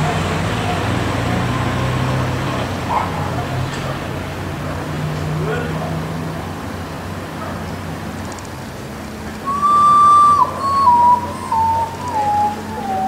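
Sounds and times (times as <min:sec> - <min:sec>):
bird whistled song: 0:09.4 - 0:13.0.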